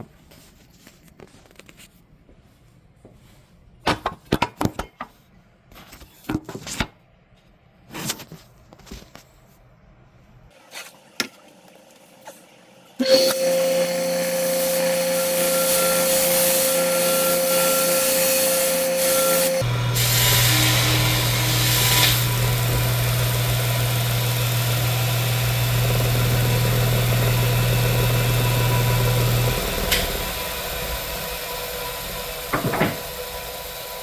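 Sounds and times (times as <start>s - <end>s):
disc sander motor whining: 13.0s - 34.0s.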